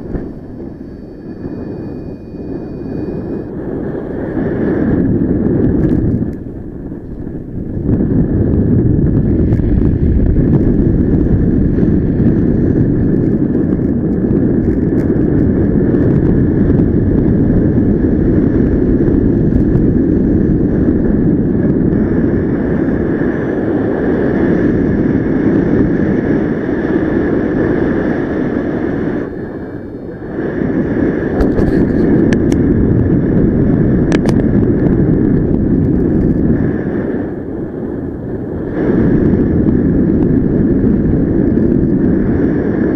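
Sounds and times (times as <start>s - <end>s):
steady high tone: 0.0s - 4.0s
wind noise on microphone: 0.0s - 42.9s.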